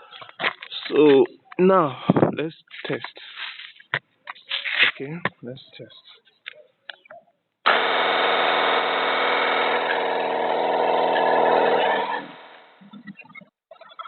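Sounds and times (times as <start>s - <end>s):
pressure washer motor and pump running: 7.7s - 12.6s.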